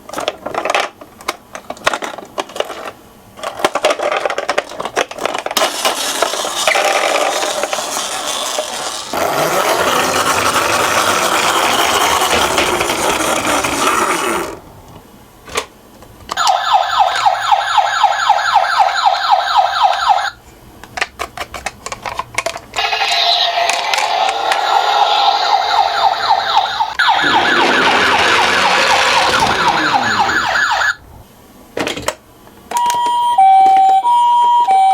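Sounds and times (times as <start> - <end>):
plastic toy cars rolling: 0.1 - 14.6, 20.9 - 30.9
toy electronic siren: 16.4 - 20.4, 22.8 - 31.0, 32.8 - 34.9.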